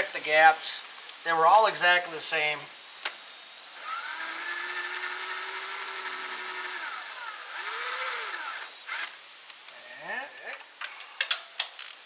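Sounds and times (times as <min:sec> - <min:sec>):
small power tool motor spinning: 0:03.6 - 0:09.2.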